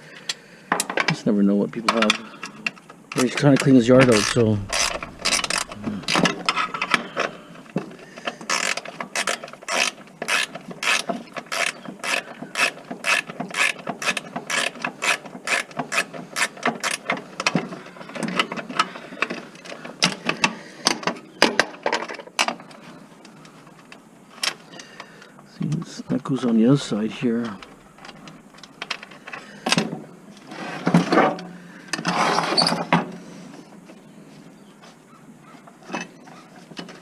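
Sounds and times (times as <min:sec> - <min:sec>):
ratchet wrench clicking: 0:04.0 - 0:06.4.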